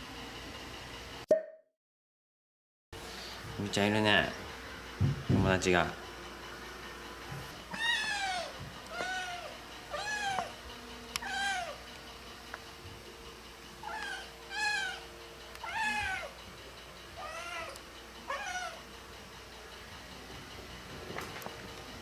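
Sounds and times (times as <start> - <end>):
kitten meowing: 7.7 - 10.6, 11.2 - 11.8, 13.8 - 15.0, 15.6 - 16.3, 17.2 - 18.8.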